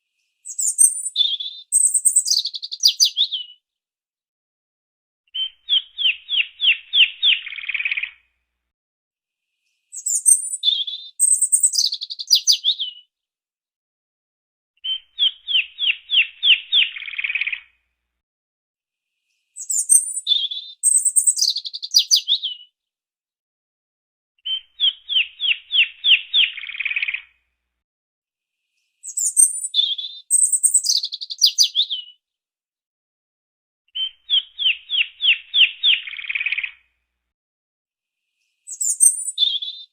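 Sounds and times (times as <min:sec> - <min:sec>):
songbird singing: 0:00.4 - 0:03.6, 0:05.3 - 0:08.1, 0:09.9 - 0:13.0, 0:14.8 - 0:17.6, 0:19.6 - 0:22.7, 0:24.4 - 0:27.2, 0:29.0 - 0:32.2, 0:33.9 - 0:36.7, 0:38.7 - 0:39.9.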